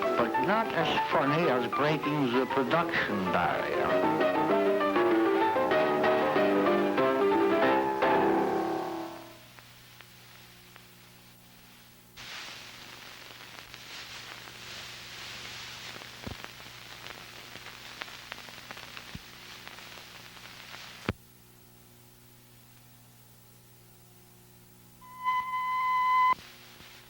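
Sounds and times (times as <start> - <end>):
static hiss: 0.0 - 27.0
low electrical hum: 8.5 - 27.0.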